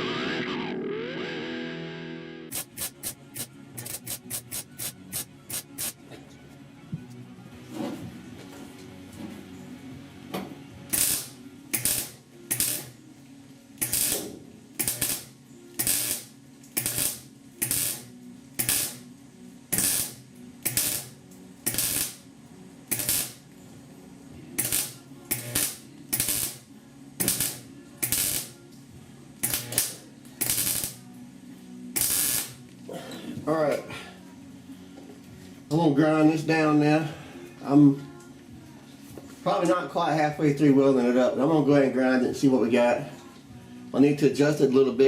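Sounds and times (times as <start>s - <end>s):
welding arc crackle: 2.5s - 6.0s, 10.9s - 13.0s, 13.8s - 23.6s, 24.6s - 28.6s, 29.4s - 31.1s, 32.0s - 32.8s.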